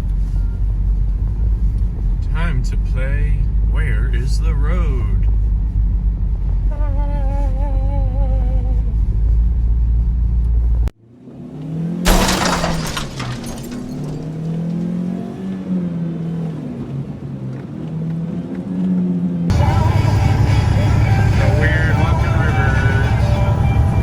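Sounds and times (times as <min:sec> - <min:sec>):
low hum shifting in pitch: 0:00.0 - 0:10.9, 0:19.5 - 0:24.0
car driving through snow: 0:08.4 - 0:12.2, 0:13.9 - 0:24.0.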